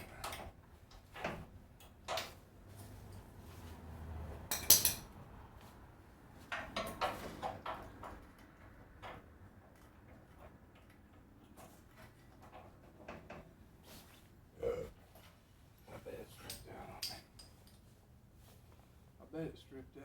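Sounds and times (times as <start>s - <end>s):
metal tools clanking: 4.5s - 5.1s.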